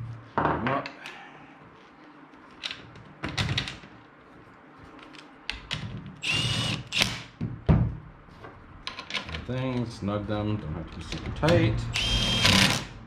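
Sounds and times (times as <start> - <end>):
clicks and knocks of parts handled: 1.8 - 4.0, 8.8 - 9.9
power drill whining: 6.2 - 7.2, 12.0 - 12.9.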